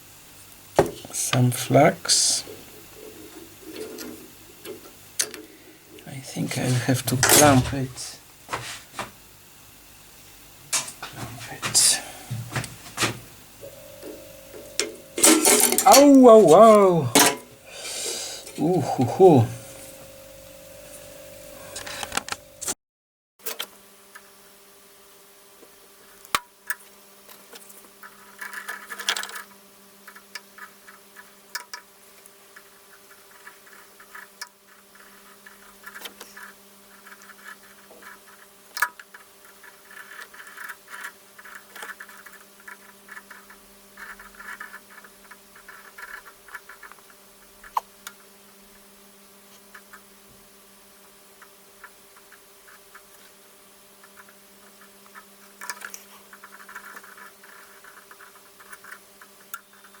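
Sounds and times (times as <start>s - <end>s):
steady electrical hum: 0.0s - 22.8s
tools clicking and crackling: 2.4s - 6.1s, 7.1s - 7.8s, 12.6s - 17.6s.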